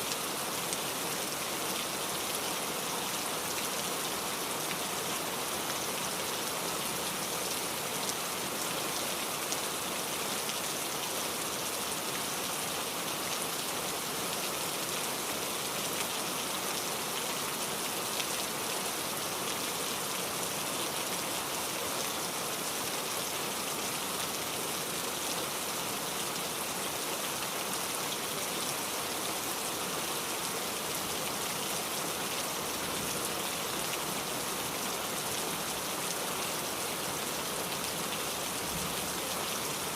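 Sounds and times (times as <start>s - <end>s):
rain pattering on surfaces: 23.6s - 39.9s.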